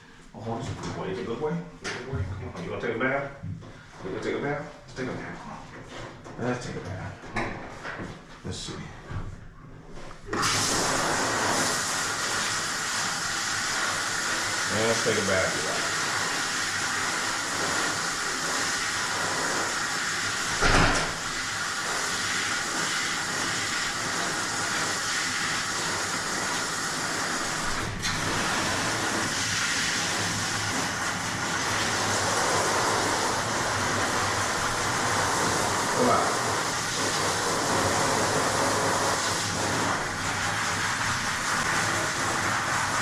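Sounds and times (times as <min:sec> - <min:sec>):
water sprayer hissing: 0:10.3 - 0:43.0
thump: 0:20.6 - 0:21.2.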